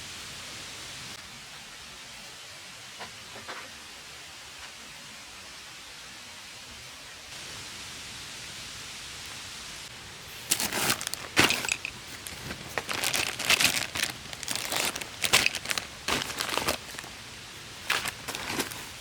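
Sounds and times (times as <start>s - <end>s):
crinkling and rustling handling: 10.3s - 19.0s.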